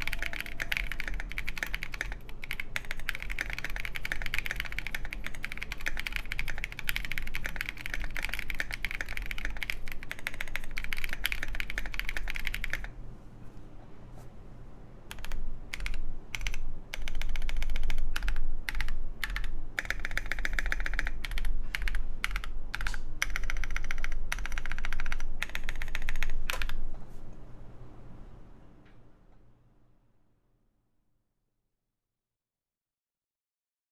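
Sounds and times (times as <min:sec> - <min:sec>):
mechanical keyboard typing: 0:00.0 - 0:12.9, 0:15.1 - 0:26.8.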